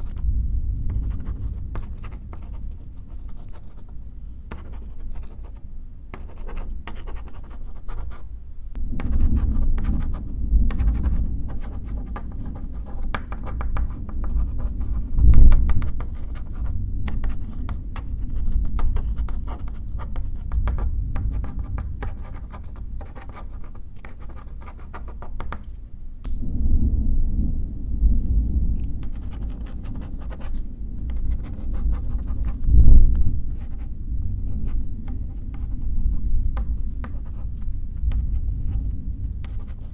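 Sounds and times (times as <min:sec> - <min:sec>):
pen scratching on paper: 0:00.0 - 0:00.3, 0:00.9 - 0:08.2, 0:08.9 - 0:25.8, 0:28.8 - 0:39.9
distant thunder rumble: 0:00.0 - 0:03.1, 0:26.3 - 0:36.6.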